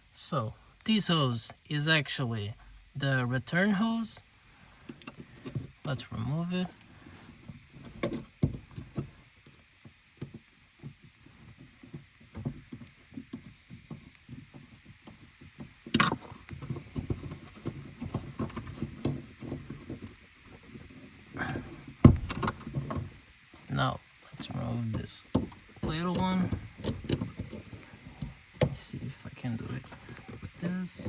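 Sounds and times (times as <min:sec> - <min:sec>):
hand tools clicking and knocking: 0:25.2 - 0:29.0.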